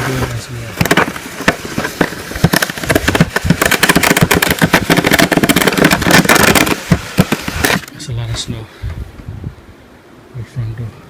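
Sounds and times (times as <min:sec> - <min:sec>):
snow crunching: 0:00.0 - 0:07.9.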